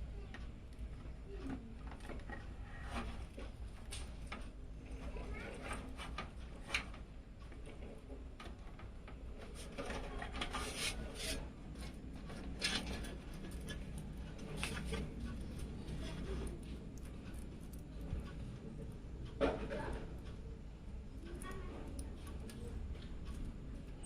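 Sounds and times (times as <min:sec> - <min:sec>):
hands clicking and scraping on computer parts: 0:09.4 - 0:20.4.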